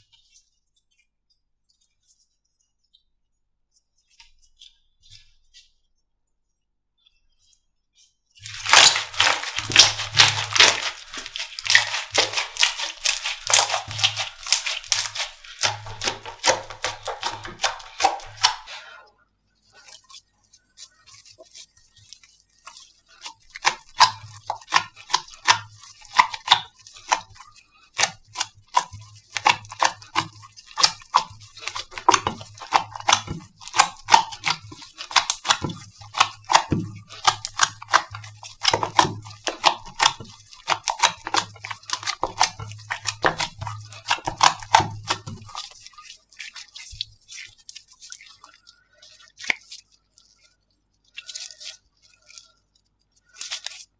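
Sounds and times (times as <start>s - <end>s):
slime clicking and popping: 8.4s - 18.8s, 23.6s - 27.3s, 28.0s - 45.7s.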